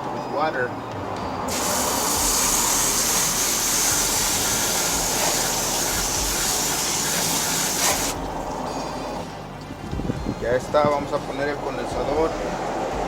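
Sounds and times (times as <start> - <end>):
water spray from hose nozzle: 1.5 - 8.4.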